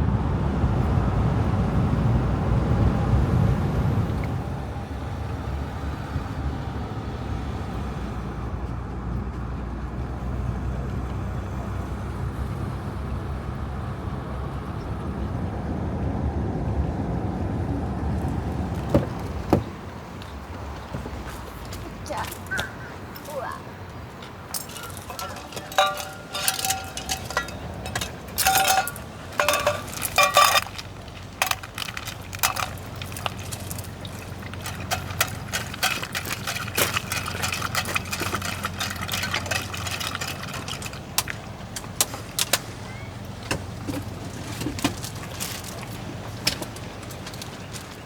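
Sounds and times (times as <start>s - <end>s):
metallic clinks and knocks: 24.5s - 42.7s.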